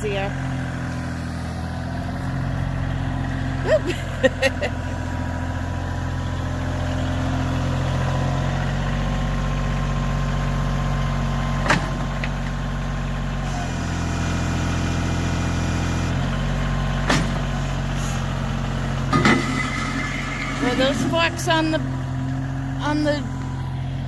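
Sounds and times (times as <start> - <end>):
tractor engine running: 0.0 - 24.0
sharp metal clanks: 19.1 - 21.2.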